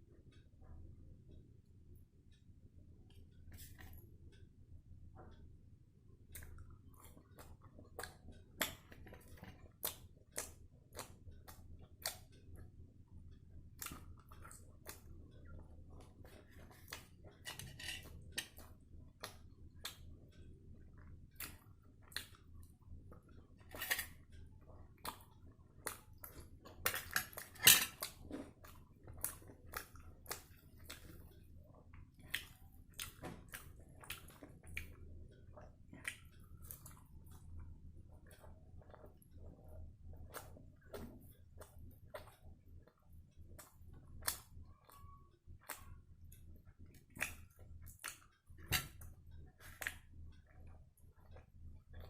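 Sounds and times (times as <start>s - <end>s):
wet eating smacks: 46.9s - 50.7s.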